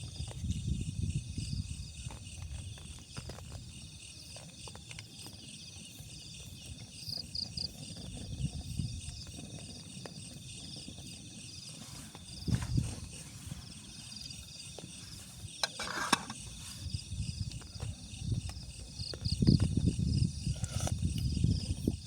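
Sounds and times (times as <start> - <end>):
insects chirring: 0.0 - 22.0.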